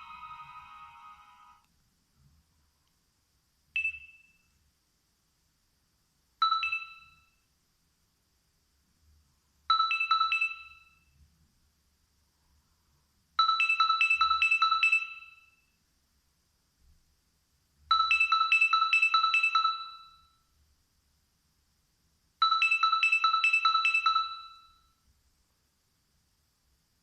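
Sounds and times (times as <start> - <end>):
mobile phone bell ringtone: 0.0 - 1.6, 6.4 - 7.3, 9.7 - 11.0, 13.4 - 15.6, 17.9 - 20.4, 22.4 - 24.9.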